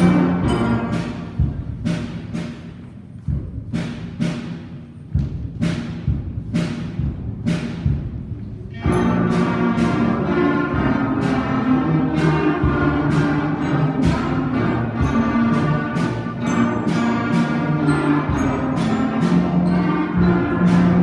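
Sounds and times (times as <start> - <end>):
brass and woodwinds playing: 0.0 - 1.2, 8.8 - 21.0
drum strikes: 0.0 - 21.0.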